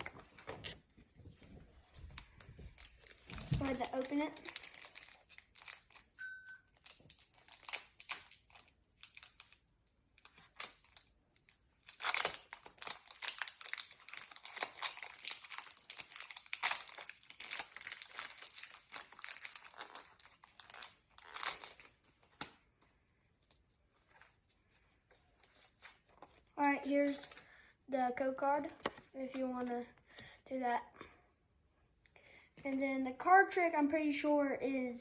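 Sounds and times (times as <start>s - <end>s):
foil wrapper tearing and crinkling: 2.8s - 22.6s.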